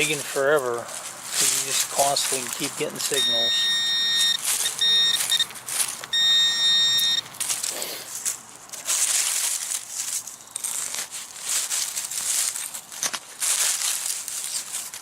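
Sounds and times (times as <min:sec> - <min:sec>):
digging scrapes in dirt: 0:00.0 - 0:03.5, 0:07.2 - 0:15.0
metal detector buzzing tone: 0:03.1 - 0:07.3.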